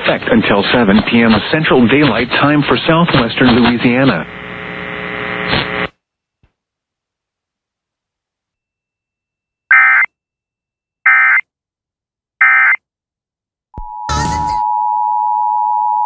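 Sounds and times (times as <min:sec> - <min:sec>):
static crackle: 0:00.1 - 0:06.0.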